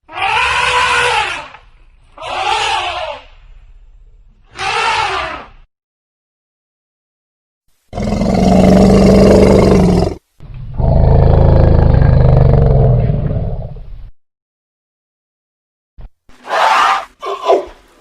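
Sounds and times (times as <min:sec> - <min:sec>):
elephant roaring: 0:08.0 - 0:10.2.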